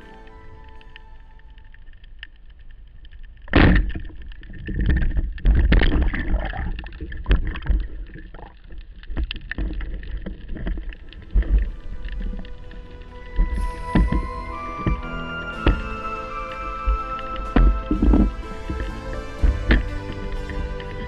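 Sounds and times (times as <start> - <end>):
water splashing and sloshing: 0.0 - 21.0.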